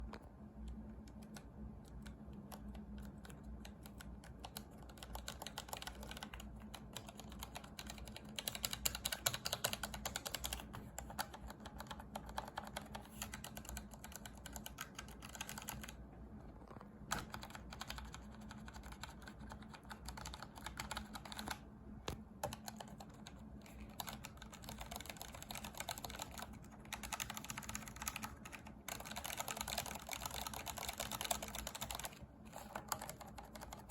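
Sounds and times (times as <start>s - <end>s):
faint steady hum: 0.0s - 33.9s
mechanical keyboard switches clicking: 1.1s - 15.9s, 23.9s - 33.9s.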